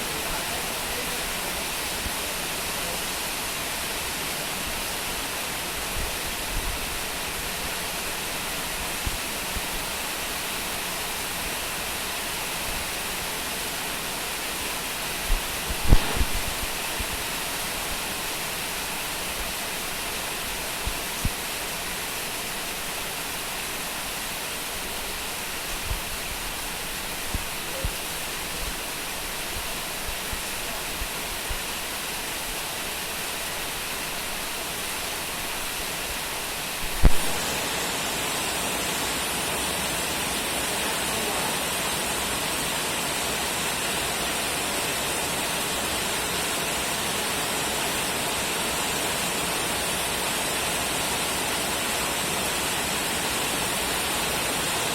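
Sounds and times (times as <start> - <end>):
heavy rain falling: 0.0 - 54.9
low thumps: 15.3 - 16.8.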